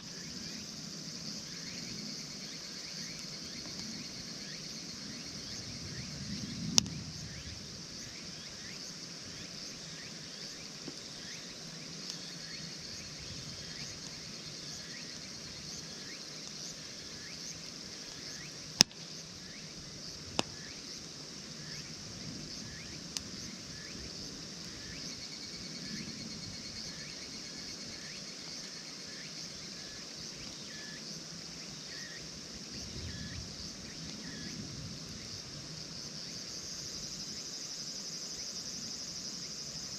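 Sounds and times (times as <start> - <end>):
insects chirping: 0.0 - 39.9
campfire wood popping: 6.2 - 7.1, 12.0 - 19.6, 20.2 - 24.9.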